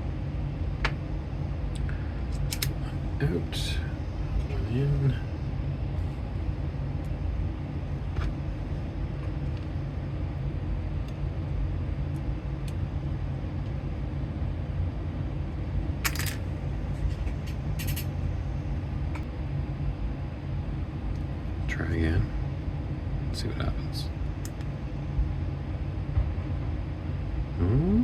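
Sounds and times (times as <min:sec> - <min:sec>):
low background rumble: 0:00.0 - 0:28.0
small parts being handled: 0:16.1 - 0:16.4.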